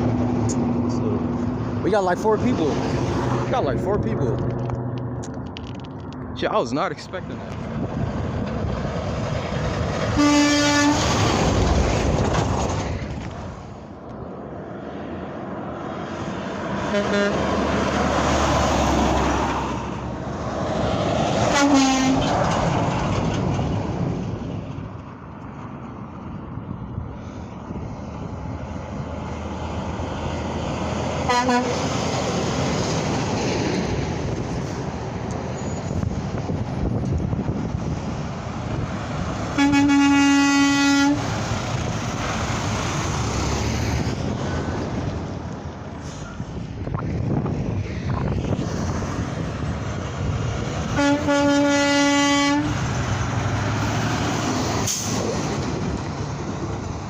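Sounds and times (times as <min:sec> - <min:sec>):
passing highway traffic: 0:00.0 - 0:57.0
truck air horns blowing: 0:10.1 - 0:11.1, 0:16.9 - 0:17.5, 0:21.5 - 0:22.3, 0:31.2 - 0:31.9, 0:39.5 - 0:41.3, 0:50.9 - 0:52.8.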